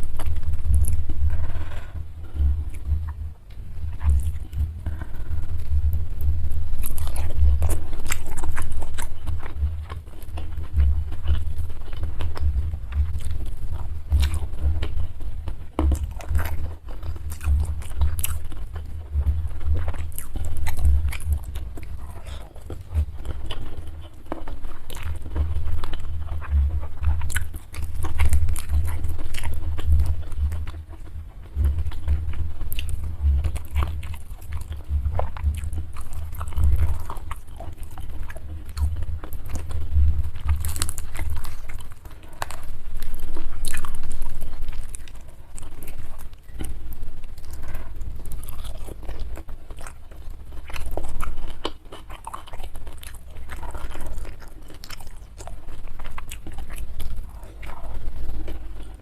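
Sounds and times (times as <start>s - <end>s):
deep low thuds: 0.0s - 24.0s, 24.6s - 42.0s
close chewing and biting food: 0.0s - 59.0s.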